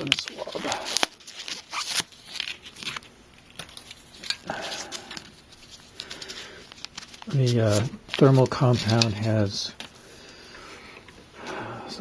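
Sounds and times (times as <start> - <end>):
soft rustling and scratching: 3.7 - 9.5.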